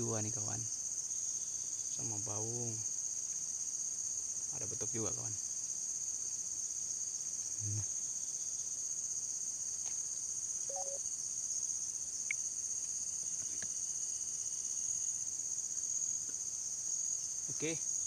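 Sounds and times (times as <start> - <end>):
insects chorus: 0.0 - 18.0
faint short chirps: 10.7 - 11.0.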